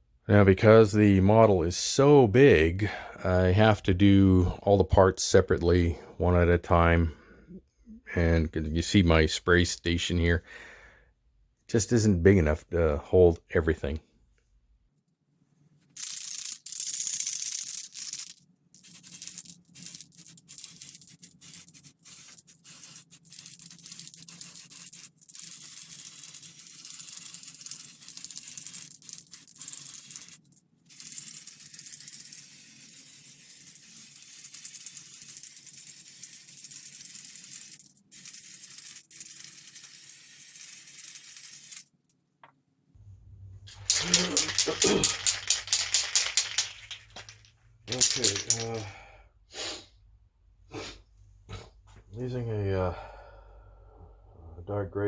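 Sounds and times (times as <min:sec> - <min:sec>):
aerosol spray can hissing: 0:18.8 - 0:28.5.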